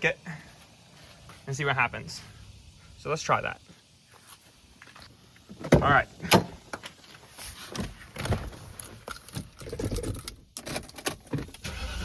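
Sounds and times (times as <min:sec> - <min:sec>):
rustling handling noises: 0:03.7 - 0:10.3.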